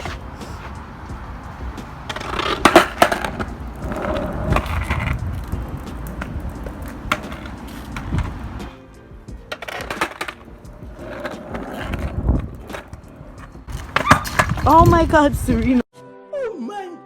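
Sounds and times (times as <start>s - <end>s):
skateboard clacks: 0.0s - 8.8s, 9.4s - 15.1s
skateboard wheels rumbling: 0.0s - 15.8s.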